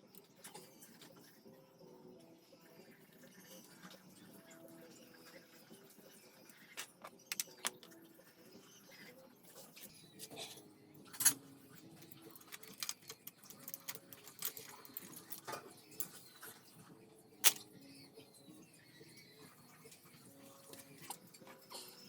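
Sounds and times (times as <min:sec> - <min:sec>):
metal engine parts clicking: 0:06.6 - 0:07.9, 0:11.1 - 0:16.2, 0:17.4 - 0:17.7.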